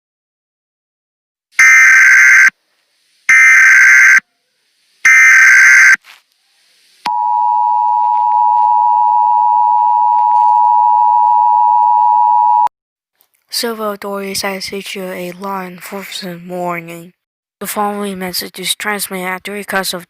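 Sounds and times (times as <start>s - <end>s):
screeching data bursts: 1.6s - 2.5s, 3.3s - 4.2s, 5.0s - 6.0s.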